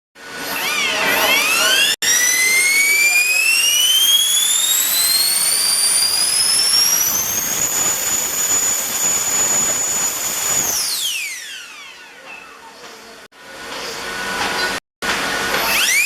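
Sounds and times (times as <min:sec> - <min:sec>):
electric ducted fan whining: 0:00.2 - 0:12.8.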